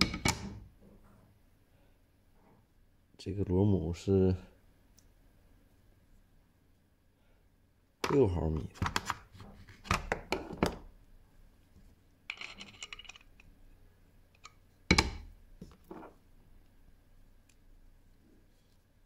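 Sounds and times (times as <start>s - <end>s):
metal parts rattling: 12.3s - 13.5s.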